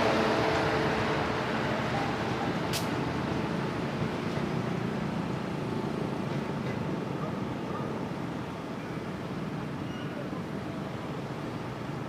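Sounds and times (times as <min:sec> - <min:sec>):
train rumble: 0:00.0 - 0:12.0
sharp click: 0:02.7 - 0:02.9.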